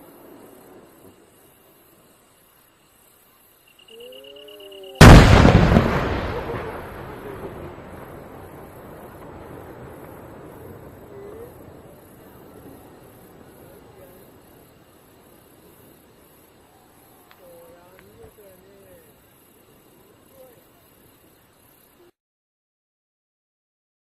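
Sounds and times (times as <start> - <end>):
firework shell boom: 5.0 - 7.0
echoing rumble: 5.0 - 13.6.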